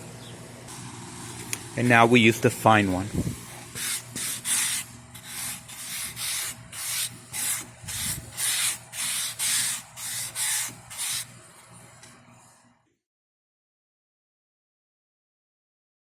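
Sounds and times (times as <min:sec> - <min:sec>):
sanding sponge rasping on wood: 0:03.7 - 0:11.3.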